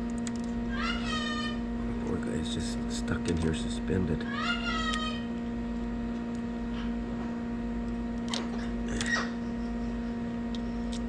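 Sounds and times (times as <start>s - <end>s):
eggshell clicks and crackles: 0.0s - 0.6s, 10.4s - 11.0s
low electrical hum: 0.0s - 11.0s.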